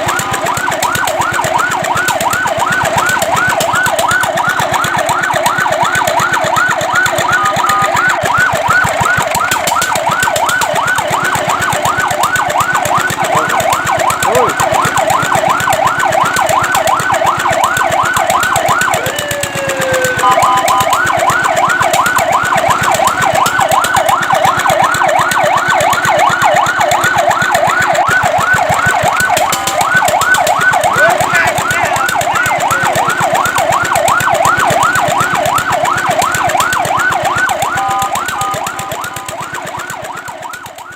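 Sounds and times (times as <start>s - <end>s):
fire truck siren yelping: 0.0s - 40.9s.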